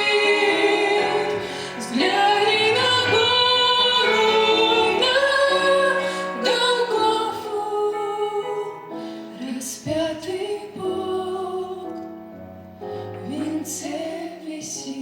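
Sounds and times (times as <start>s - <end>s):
musical accompaniment: 0.0s - 10.4s
woman singing a hymn: 0.0s - 12.0s, 13.2s - 15.0s.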